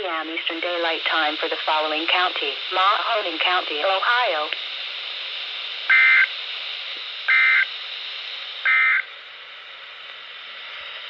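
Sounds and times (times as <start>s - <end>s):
static hiss: 0.0s - 11.0s
two-tone digital squawks: 5.9s - 6.3s, 7.3s - 7.6s, 8.7s - 9.0s.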